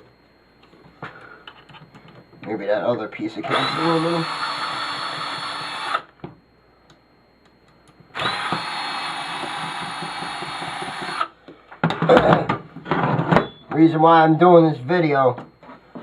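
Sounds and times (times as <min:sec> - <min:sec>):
power drill running: 0:03.4 - 0:06.1, 0:08.1 - 0:11.4.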